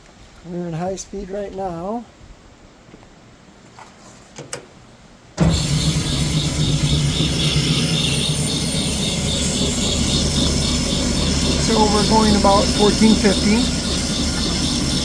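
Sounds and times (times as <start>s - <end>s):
bandsaw motor humming: 5.4s - 15.0s.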